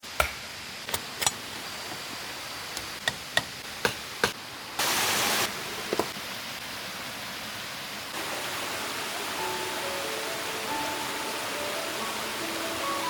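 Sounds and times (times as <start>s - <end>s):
steady hiss: 0.0s - 13.0s.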